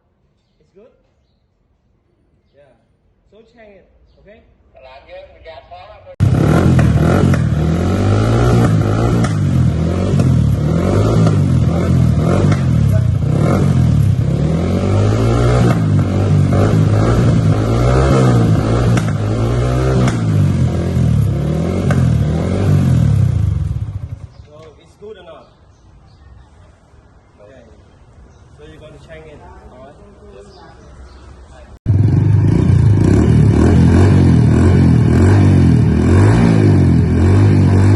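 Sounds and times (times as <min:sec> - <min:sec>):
motorcycle engine revving: 0:06.2 - 0:24.6, 0:31.9 - 0:37.9.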